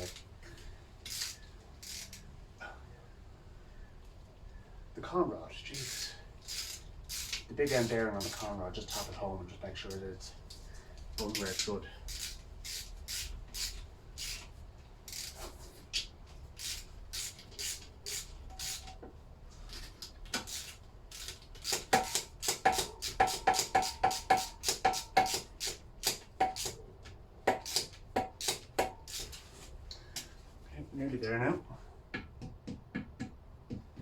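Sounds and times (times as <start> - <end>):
hammer tapping on metal: 21.9 - 26.7, 32.1 - 34.0.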